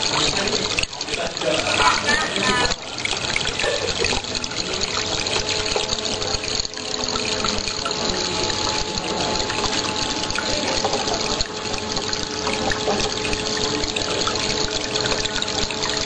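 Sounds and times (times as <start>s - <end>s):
steady hum: 0.0s - 16.0s
water splashing and trickling: 0.0s - 16.0s.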